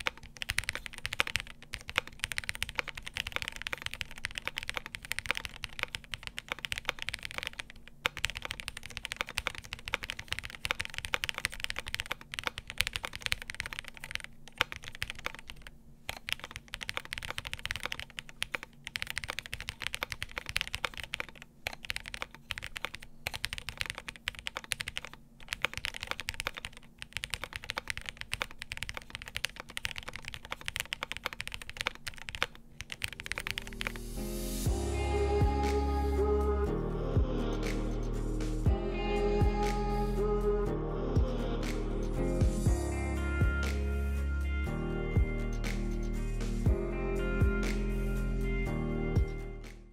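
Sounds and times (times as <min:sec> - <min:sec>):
fast typing on mechanical keyboard: 0:00.0 - 0:34.0.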